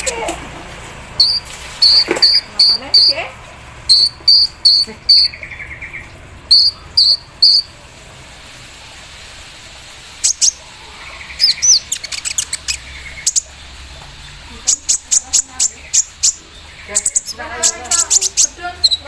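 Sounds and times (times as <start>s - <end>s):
bird chirping and chattering: 0.0s - 0.4s, 1.2s - 7.7s, 10.2s - 19.0s
soft buzzy bird trill: 1.2s - 3.2s, 3.9s - 7.8s.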